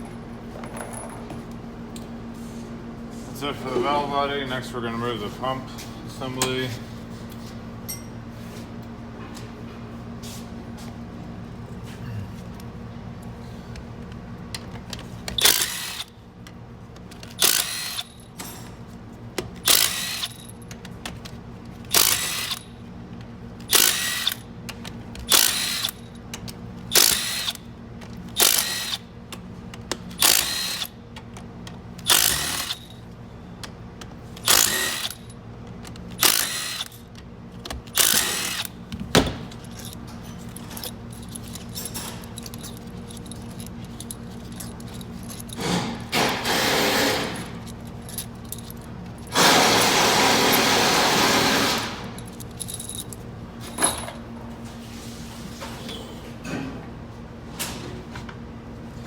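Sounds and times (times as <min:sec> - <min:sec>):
steady low hum: 0:00.0 - 0:59.0
power driver whining: 0:37.9 - 0:53.1.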